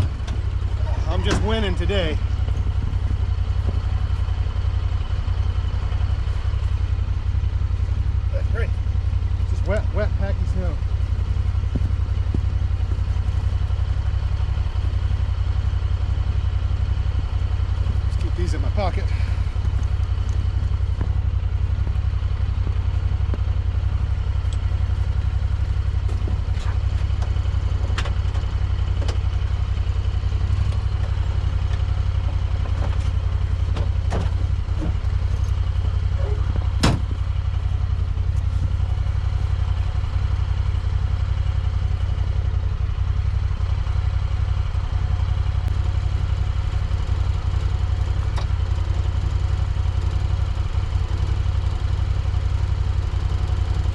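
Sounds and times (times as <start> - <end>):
vehicle engine idling: 0.0 - 53.9.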